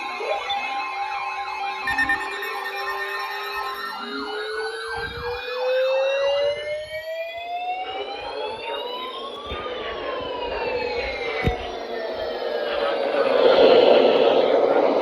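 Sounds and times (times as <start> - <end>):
steady electronic tone: 0.0 - 5.4
wailing siren: 0.0 - 15.0
yelping siren: 0.0 - 15.0.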